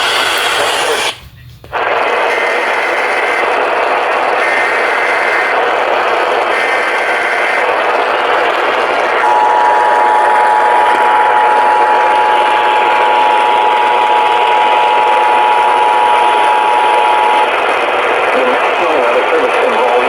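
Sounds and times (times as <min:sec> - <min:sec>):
radio static: 0:00.0 - 0:20.0.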